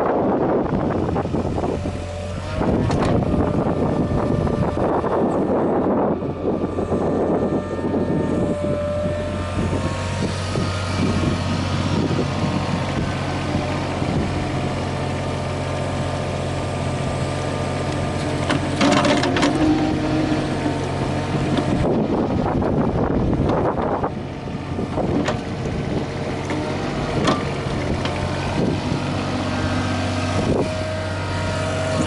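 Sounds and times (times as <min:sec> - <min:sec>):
mini excavator diesel engine running: 0:00.0 - 0:32.0.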